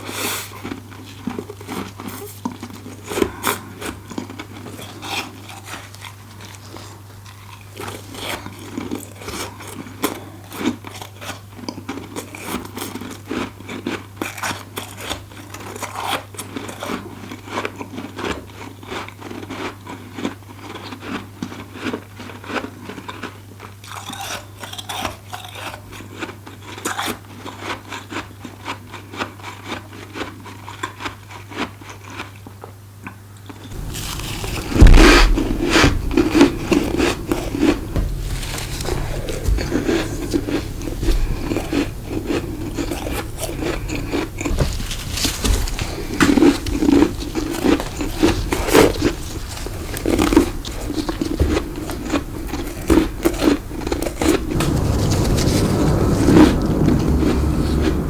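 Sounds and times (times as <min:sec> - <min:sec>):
chewing crunchy frost: 0:33.5 - 0:55.3
steady low hum: 0:33.7 - 0:58.0.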